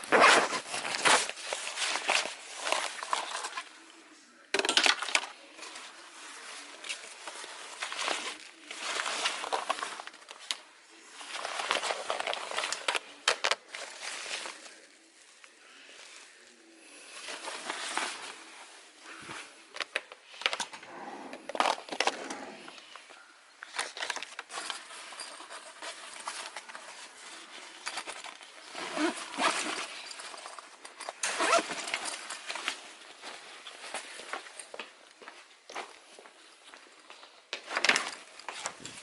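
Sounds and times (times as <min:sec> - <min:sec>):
small objects clicking and rustling: 0:04.5 - 0:15.5, 0:19.2 - 0:20.9, 0:23.6 - 0:34.9.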